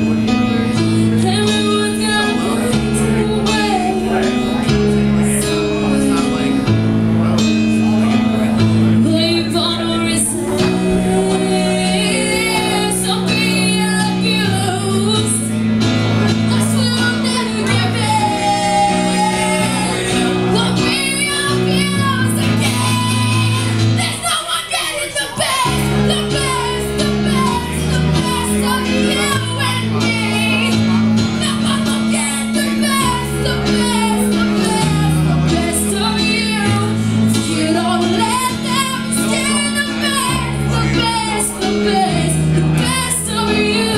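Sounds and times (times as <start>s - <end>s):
held bass and chord notes: 0.0s - 24.4s, 25.4s - 43.9s
lead singing voice: 9.0s - 15.5s, 16.3s - 43.9s.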